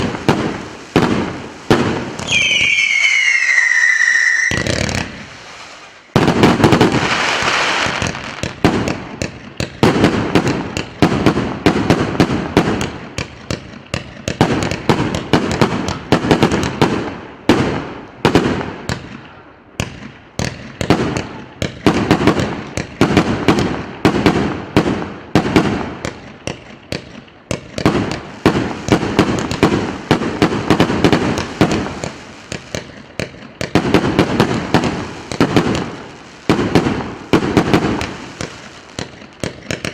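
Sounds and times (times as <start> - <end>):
firework cake barrage: 0.0 - 39.9.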